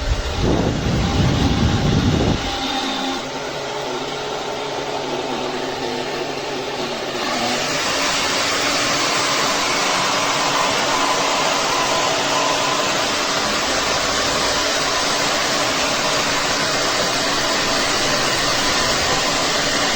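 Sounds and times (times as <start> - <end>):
faint motor whine: 0.0 - 19.9
hair dryer blowing air: 0.0 - 19.9.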